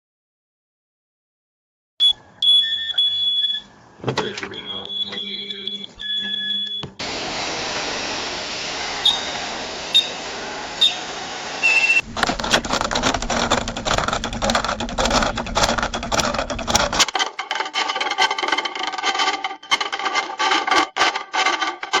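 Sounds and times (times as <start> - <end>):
short electronic beep: 4.2 - 6.8.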